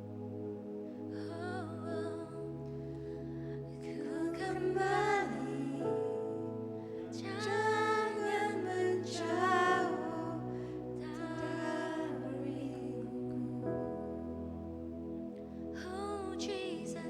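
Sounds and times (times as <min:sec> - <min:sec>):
held keyboard chords: 0:00.0 - 0:17.0
person singing: 0:03.7 - 0:13.6, 0:15.8 - 0:17.0.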